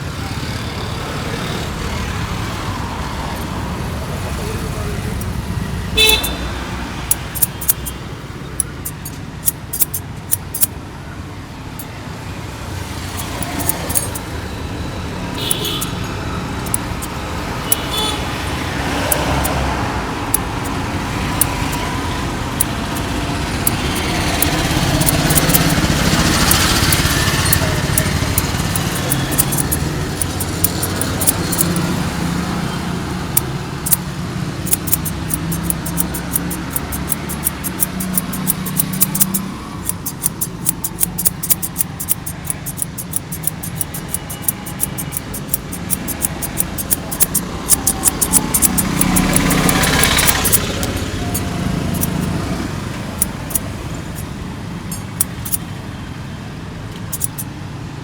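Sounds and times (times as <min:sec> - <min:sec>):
road traffic noise: 0:00.0 - 0:58.0
scissors snipping: 0:06.0 - 0:06.4, 0:07.1 - 0:08.0, 0:08.6 - 0:10.8, 0:13.2 - 0:14.3, 0:15.4 - 0:16.0, 0:16.6 - 0:19.6, 0:22.6 - 0:31.9, 0:33.4 - 0:34.0, 0:34.6 - 0:52.3, 0:53.2 - 0:54.2, 0:55.2 - 0:55.6, 0:57.1 - 0:57.4.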